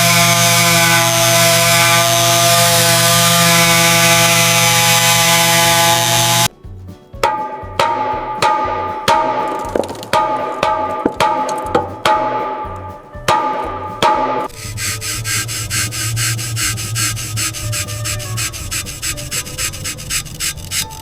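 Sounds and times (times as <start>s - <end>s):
power tool running: 0.0s - 6.5s, 14.5s - 21.0s
hammer blows on metal: 7.2s - 20.8s.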